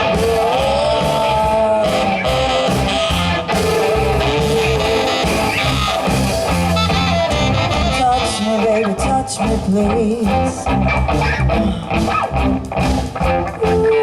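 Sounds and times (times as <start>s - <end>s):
drums: 0.0s - 14.0s
electric guitar lines: 0.0s - 14.0s
repeating bass line: 0.0s - 14.0s.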